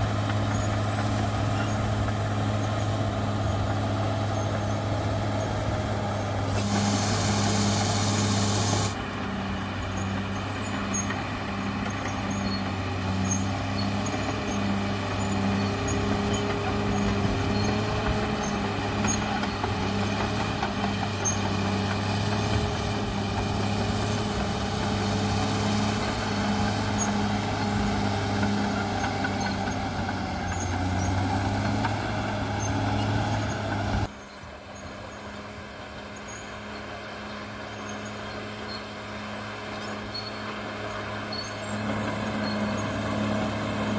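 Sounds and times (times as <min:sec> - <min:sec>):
bulldozer diesel engine drone: 0:00.0 - 0:43.9
hiss: 0:06.5 - 0:09.0.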